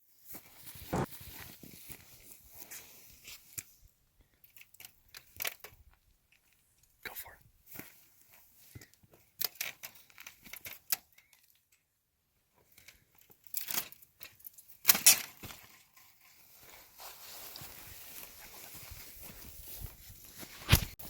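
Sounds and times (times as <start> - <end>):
clothing rustling near microphone: 15.3 - 21.0.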